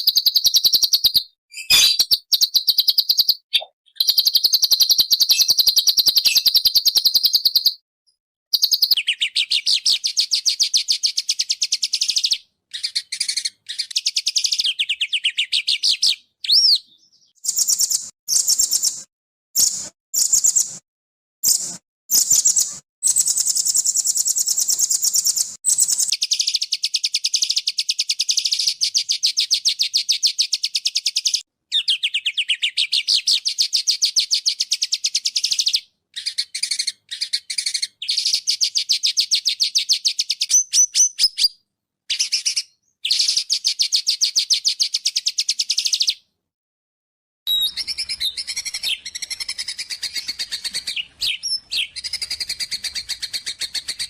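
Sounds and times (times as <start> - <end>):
bird up-and-down whistle: 0.0 - 7.8, 8.5 - 20.7, 21.4 - 46.2, 47.5 - 54.0
songbird singing high trills: 8.6 - 19.0, 21.5 - 46.2, 47.5 - 54.0.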